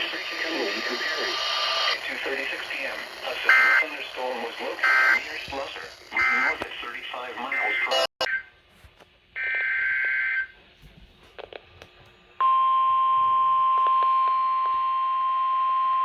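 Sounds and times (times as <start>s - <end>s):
warbling digital data burst: 0.0s - 8.1s
steady high beeping tone: 0.5s - 6.6s, 7.4s - 8.5s.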